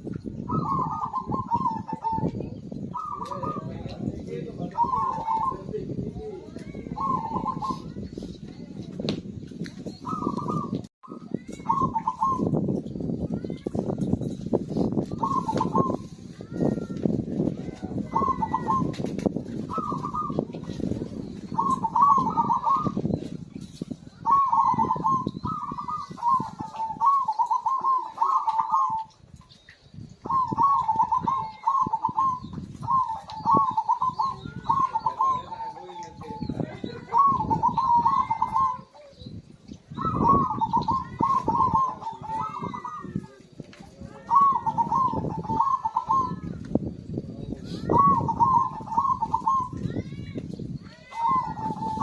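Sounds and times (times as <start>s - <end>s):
dove cooing: 0.3s - 8.1s, 10.0s - 10.9s, 11.5s - 12.6s, 15.1s - 16.6s, 17.6s - 23.2s, 24.2s - 29.2s, 30.2s - 39.2s, 39.9s - 43.4s, 44.0s - 46.6s, 47.7s - 50.0s, 51.0s - 52.0s.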